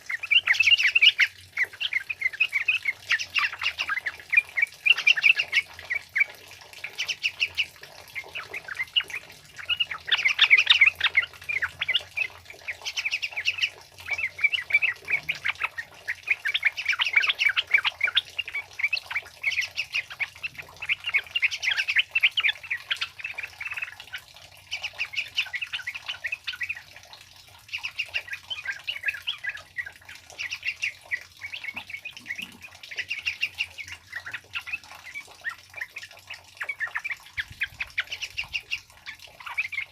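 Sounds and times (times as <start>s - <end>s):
bulbuls chattering: 27.8s - 39.9s.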